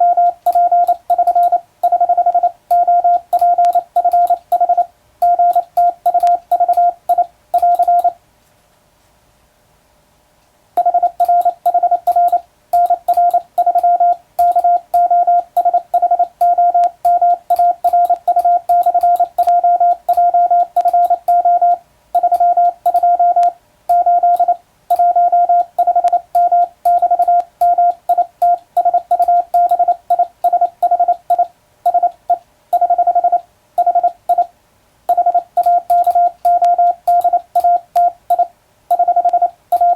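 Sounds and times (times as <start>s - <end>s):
morse code sidetone beeps: 0.0s - 8.2s, 10.8s - 34.5s, 35.1s - 39.9s.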